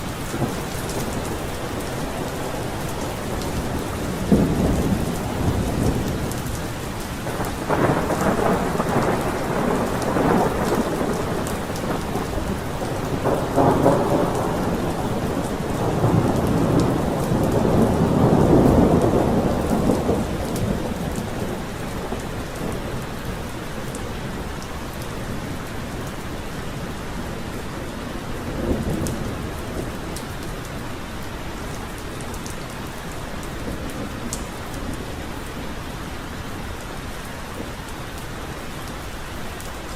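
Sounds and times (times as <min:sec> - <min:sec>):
rolling thunder: 0:00.0 - 0:26.0, 0:26.9 - 0:30.6
heavy rain: 0:00.0 - 0:39.9.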